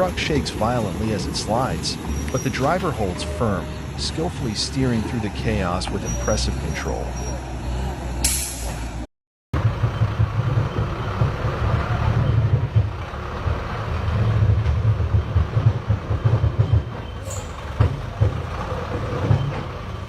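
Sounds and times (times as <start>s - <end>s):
truck engine rumbling: 0.0s - 20.0s
sharp knocks and clanks: 9.6s - 20.0s.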